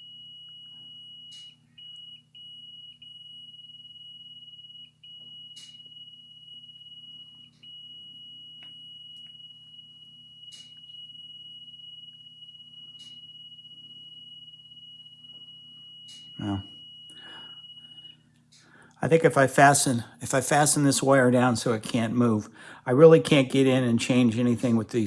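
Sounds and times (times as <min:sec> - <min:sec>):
continuity tester high beep: 0:00.0 - 0:18.2.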